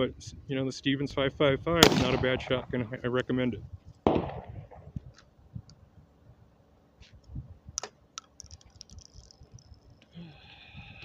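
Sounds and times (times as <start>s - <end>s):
shotgun bang: 1.8s - 2.7s, 4.0s - 4.9s
gun handling metallic clicks: 7.8s - 10.1s.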